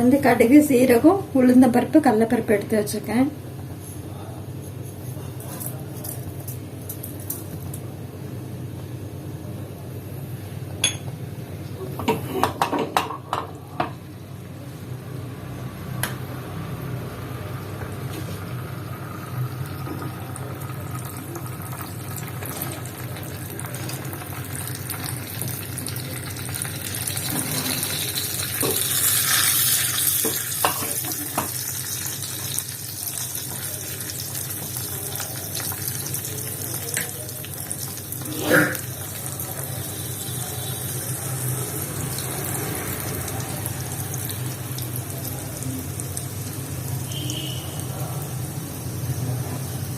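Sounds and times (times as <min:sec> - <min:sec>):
seeds sizzling in hot oil: 0:16.9 - 0:49.9.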